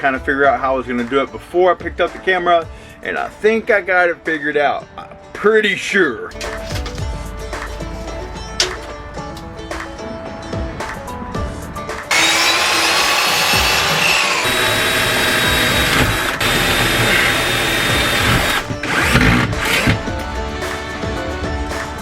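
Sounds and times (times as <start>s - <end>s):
background music: 0.0s - 22.0s
power tool whining: 12.1s - 20.1s.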